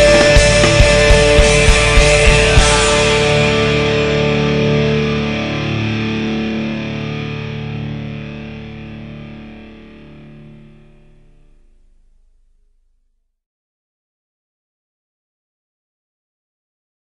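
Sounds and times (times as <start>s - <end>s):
distorted electric guitar chord: 0.0s - 12.7s.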